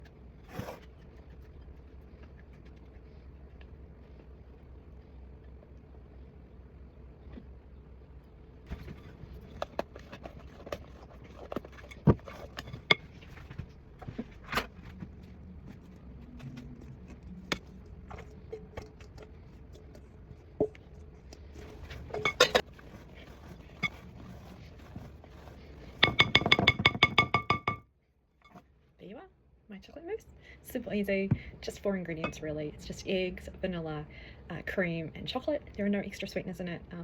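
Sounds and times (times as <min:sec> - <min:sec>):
low steady hum: 0:00.0 - 0:37.0
kitchen utensils and dishes clinking: 0:21.9 - 0:22.7.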